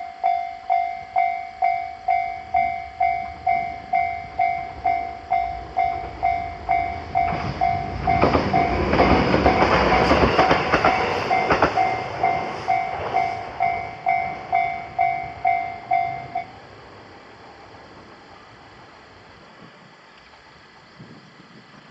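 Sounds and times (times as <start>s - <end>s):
train wheels clacking on rails: 0.2s - 16.5s.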